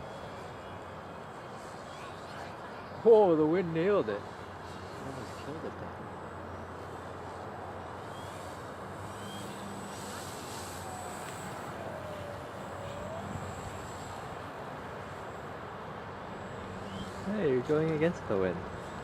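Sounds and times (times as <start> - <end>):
distant model plane engine: 0.0 - 19.0.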